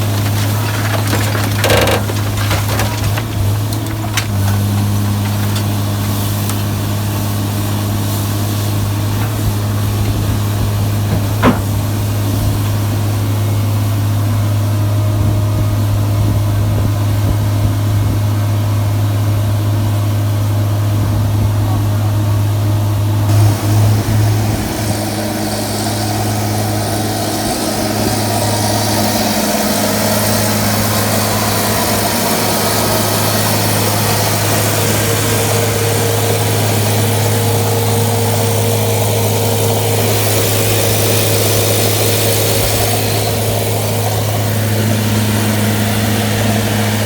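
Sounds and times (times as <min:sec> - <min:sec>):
baler power unit humming: 0:00.0 - 0:47.0
sharp metal knocks: 0:11.0 - 0:12.0.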